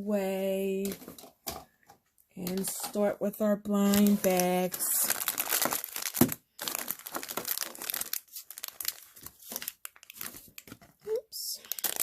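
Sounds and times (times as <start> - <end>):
plastic bag crinkling and tearing: 3.8 - 12.0.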